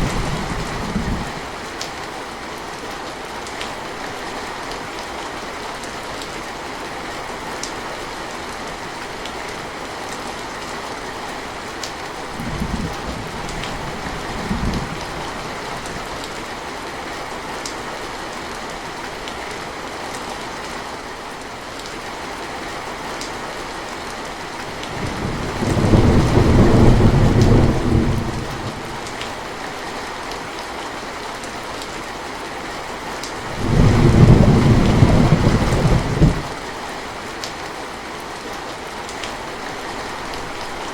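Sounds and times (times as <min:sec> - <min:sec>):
thunder rumbling: 0:00.0 - 0:01.4, 0:12.3 - 0:16.1, 0:24.7 - 0:29.5, 0:33.4 - 0:36.6
steady rainfall: 0:00.0 - 0:40.9.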